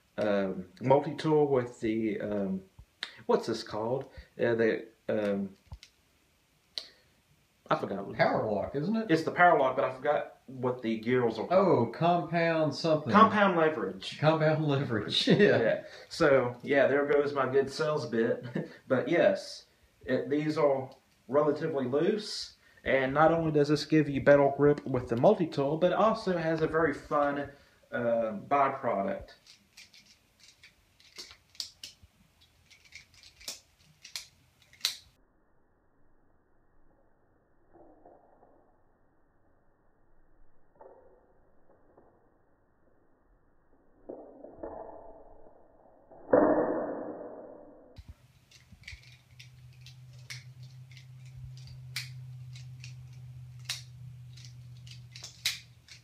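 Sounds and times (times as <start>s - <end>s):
multitool handles clacking: 29.3s - 35.0s, 48.0s - 56.0s
steady low hum: 47.0s - 56.0s.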